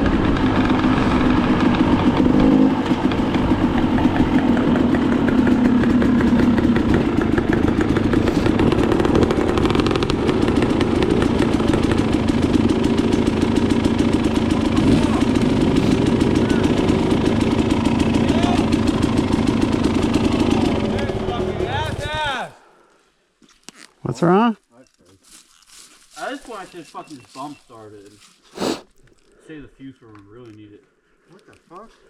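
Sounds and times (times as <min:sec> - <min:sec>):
two-stroke dirt bike engine: 0:00.0 - 0:22.2.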